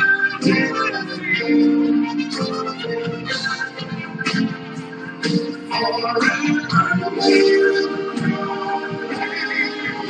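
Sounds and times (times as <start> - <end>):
gospel worship music: 0.0 - 10.0.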